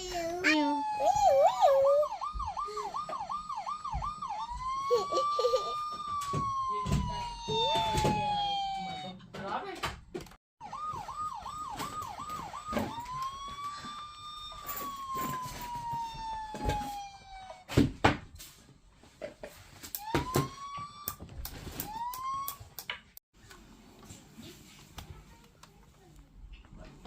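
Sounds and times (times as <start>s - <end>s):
toy police siren: 0.5s - 9.2s, 10.6s - 17.7s, 20.0s - 22.7s.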